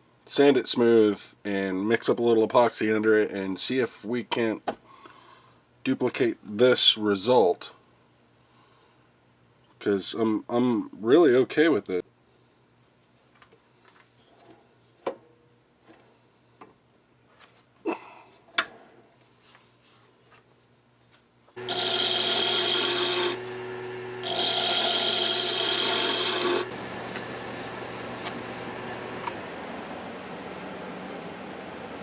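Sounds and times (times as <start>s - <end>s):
tool scraping spinning wood: 21.6s - 30.3s
wood lathe humming: 21.6s - 30.3s.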